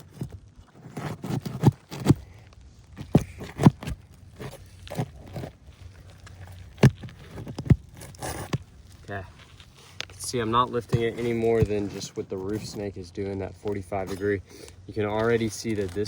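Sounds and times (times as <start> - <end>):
roof tool knocking and scraping: 0.0 - 2.4, 3.0 - 9.5, 10.1 - 12.9.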